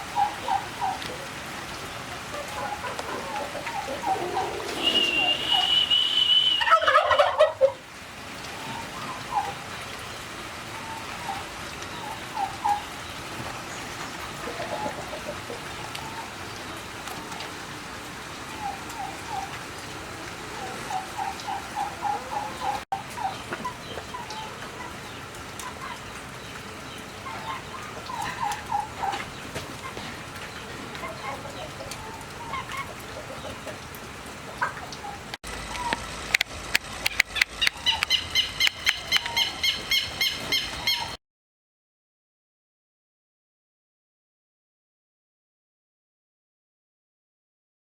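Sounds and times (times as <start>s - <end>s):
turkeys gobbling: 0.1s - 1.2s, 2.2s - 7.9s, 8.6s - 9.7s, 10.8s - 12.9s, 14.4s - 16.5s, 18.5s - 26.1s, 27.1s - 33.9s, 34.5s - 36.1s, 37.0s - 41.2s
background hiss: 3.3s - 6.8s
high-pitched bird calls: 3.4s - 7.4s, 37.1s - 41.2s.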